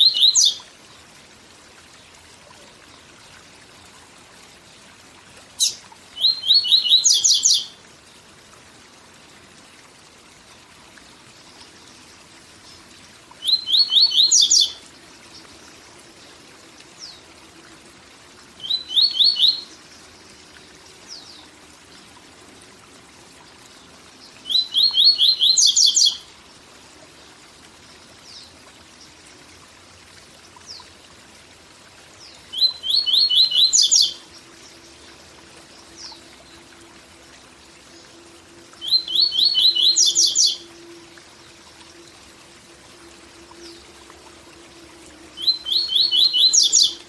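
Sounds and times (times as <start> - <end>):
bird singing: 0.0 - 0.7, 5.6 - 7.8, 13.4 - 14.8, 18.6 - 19.8, 24.2 - 26.2, 32.2 - 35.1, 38.8 - 41.1, 45.2 - 47.0.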